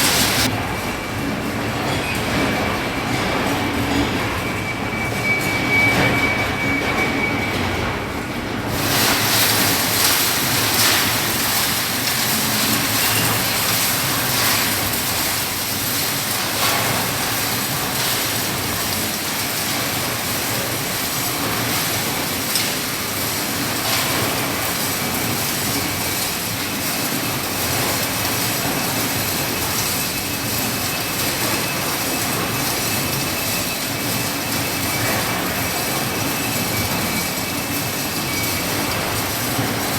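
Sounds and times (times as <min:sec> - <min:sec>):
gravel tumbling in rotating drum: 0:08.7 - 0:21.5.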